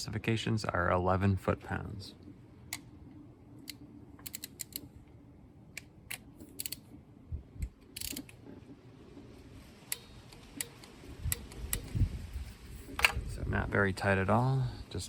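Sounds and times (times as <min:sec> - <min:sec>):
torque wrench ratcheting clicks: 0:04.2 - 0:04.8, 0:06.1 - 0:06.8.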